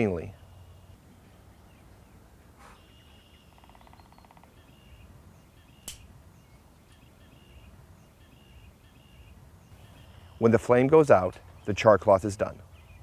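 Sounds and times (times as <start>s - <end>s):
small birds chirping: 0.0s - 13.0s
bird trill: 2.7s - 10.7s
sharp click: 5.8s - 6.0s.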